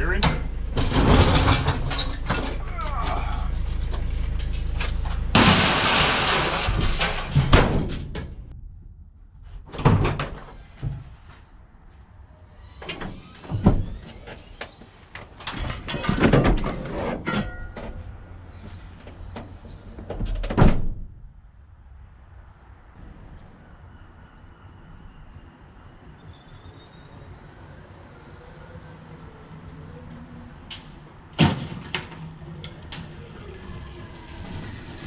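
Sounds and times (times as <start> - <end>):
low rumble: 0.0 - 10.4
van doors banging: 0.2 - 4.2, 4.8 - 8.5.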